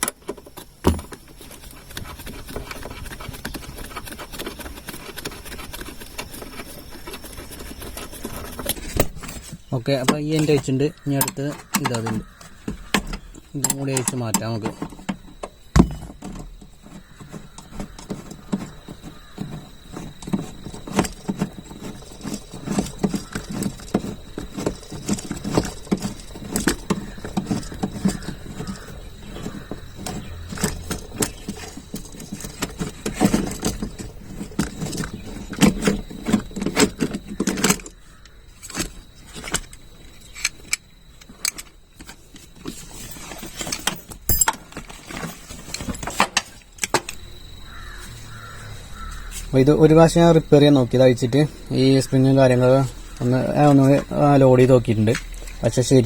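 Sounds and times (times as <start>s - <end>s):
hand tools clinking on metal: 9.8s - 12.3s, 13.5s - 14.9s, 43.0s - 48.4s.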